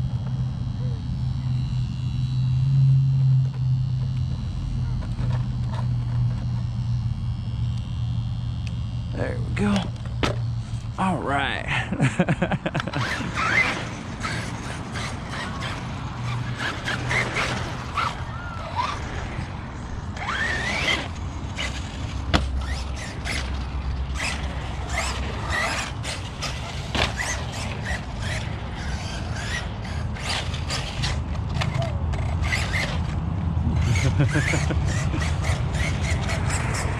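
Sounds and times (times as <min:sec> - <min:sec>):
toy car squeals and chirps: 0:13.0 - 0:19.2, 0:20.2 - 0:21.9, 0:27.2 - 0:33.1.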